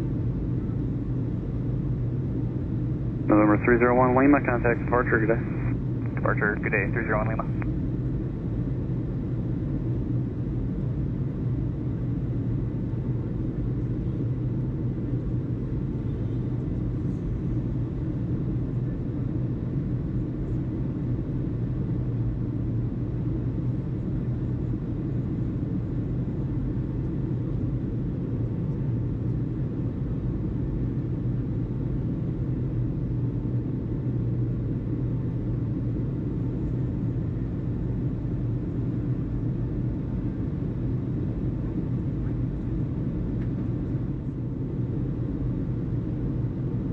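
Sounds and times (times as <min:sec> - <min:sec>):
low engine rumble: 0:02.6 - 0:07.7.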